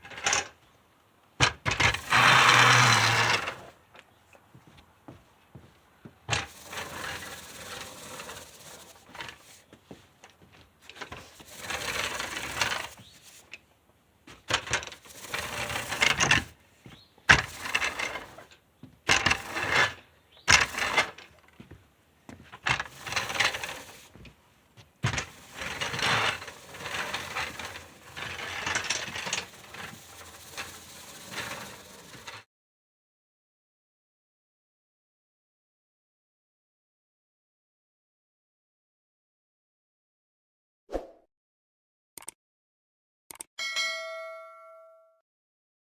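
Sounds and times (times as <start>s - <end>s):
push broom scraping ground: 1.4s - 3.8s, 5.6s - 13.7s, 14.3s - 32.5s
broom gears turning: 1.7s - 3.7s, 6.3s - 9.7s, 10.8s - 13.6s, 14.4s - 16.6s, 17.3s - 21.4s, 22.6s - 24.2s, 25.0s - 32.4s.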